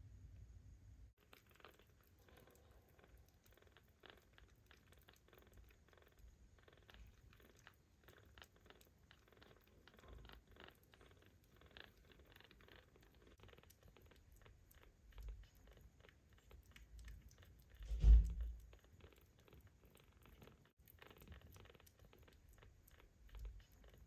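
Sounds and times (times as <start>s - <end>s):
loud low thump: 17.9s - 18.5s.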